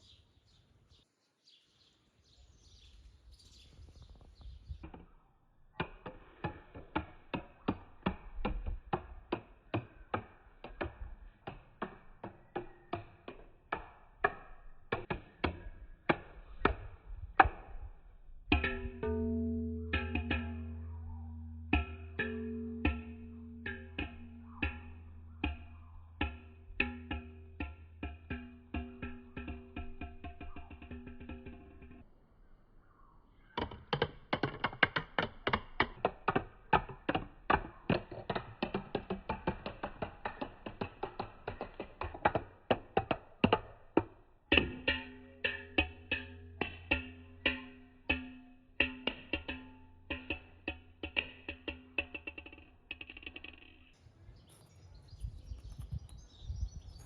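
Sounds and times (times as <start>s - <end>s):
low steady tones: 18.4s - 32.0s.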